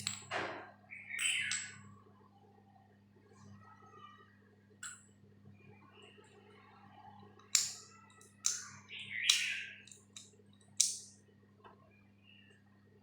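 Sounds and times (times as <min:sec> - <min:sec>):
clicks of small hard parts: 0:07.4 - 0:08.7, 0:09.3 - 0:11.1.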